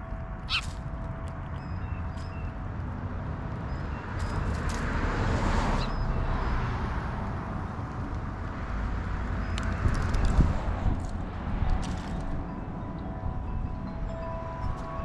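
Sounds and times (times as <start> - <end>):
faint bird chirps: 0.5 - 0.7
vehicle passing: 3.0 - 12.8.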